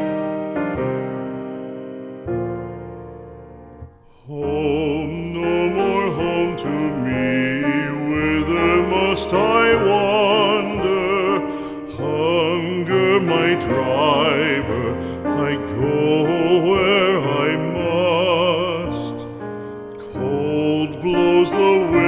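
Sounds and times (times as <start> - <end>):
piano accompaniment: 0.0 - 22.0
piano chord: 0.0 - 22.0
person singing a slow ballad: 3.9 - 22.0.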